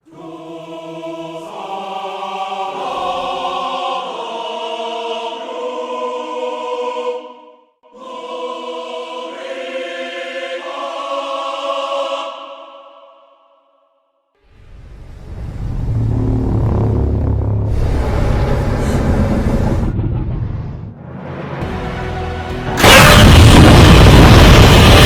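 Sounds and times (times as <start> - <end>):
choir holding long chords: 0.0 - 14.0.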